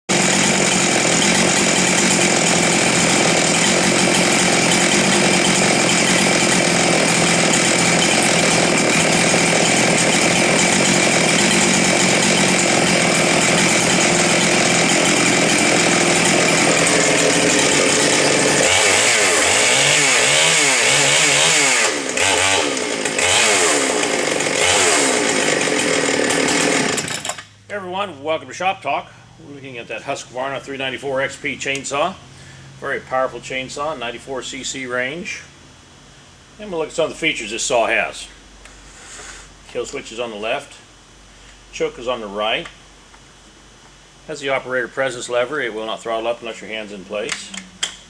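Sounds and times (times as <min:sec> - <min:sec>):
chainsaw running at high revs: 0:00.1 - 0:27.5.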